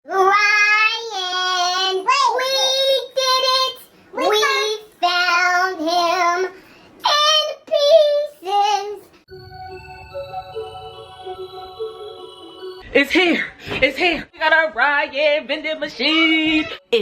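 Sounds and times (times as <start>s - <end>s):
child singing: 0.1s - 9.1s.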